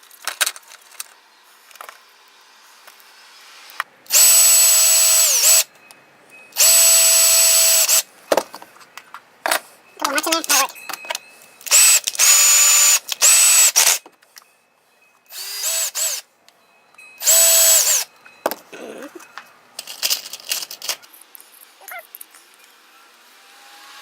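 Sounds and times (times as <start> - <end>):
electric drill whining: 4.1 - 5.7, 6.6 - 8.0, 11.7 - 14.0, 15.3 - 16.2, 17.2 - 18.1
scraping and rattling: 19.2 - 22.4.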